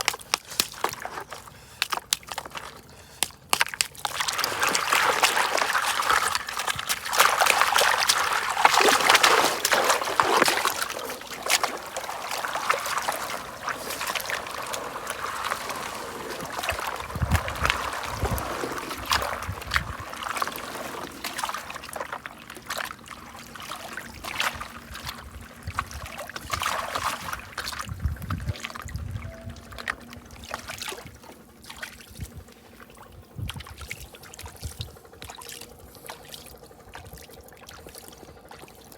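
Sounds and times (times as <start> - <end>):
water sloshing in a gold pan: 0.0 - 38.9
dull low bumps: 9.9 - 20.7.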